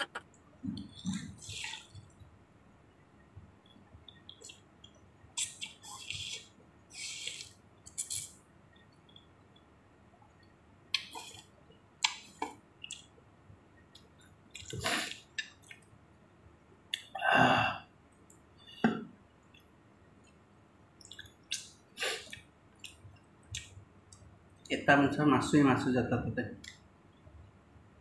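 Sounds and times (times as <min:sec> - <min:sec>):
chewing: 0:21.0 - 0:24.2.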